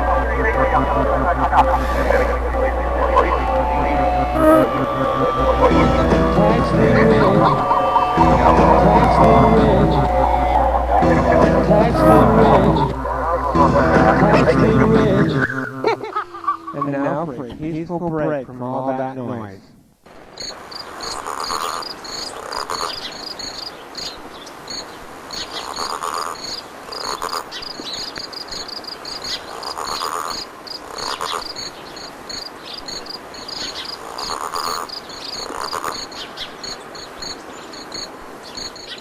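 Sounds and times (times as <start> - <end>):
frog calls: 0.0 - 17.4, 20.1 - 39.0
crickets chirping: 20.1 - 39.0.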